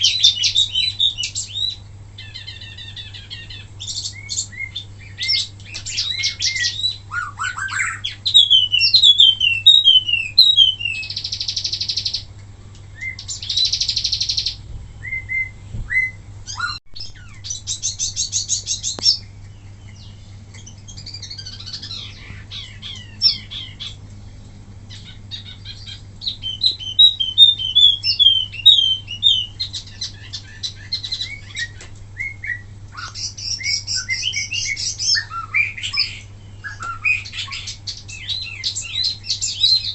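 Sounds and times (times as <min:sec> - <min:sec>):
faint steady hum: 0:00.0 - 0:39.9
songbird chirping and rattling: 0:00.0 - 0:39.9.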